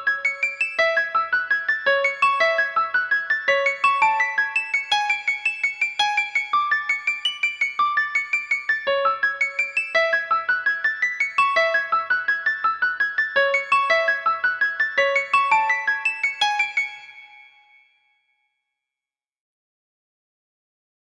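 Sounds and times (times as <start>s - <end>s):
mobile phone ringtone melody: 3.5s - 10.2s, 15.0s - 17.6s.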